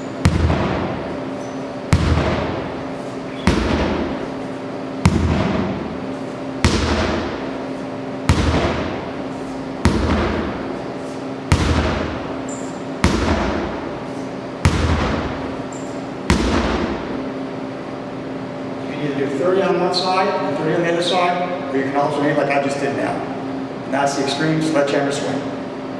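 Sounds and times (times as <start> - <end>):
sledgehammer striking a tire: 0.2 - 1.0, 1.9 - 2.7, 3.3 - 4.3, 5.0 - 5.9, 6.6 - 7.5, 8.3 - 9.1, 9.8 - 10.7, 11.5 - 12.3, 13.0 - 13.9, 14.7 - 15.5, 16.3 - 17.1.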